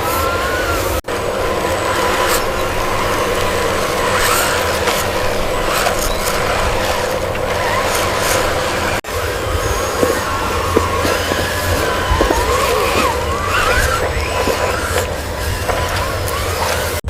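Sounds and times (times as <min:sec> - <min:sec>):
electric motor whirring: 0:00.0 - 0:17.0
clicks and scrapes: 0:01.0 - 0:17.0.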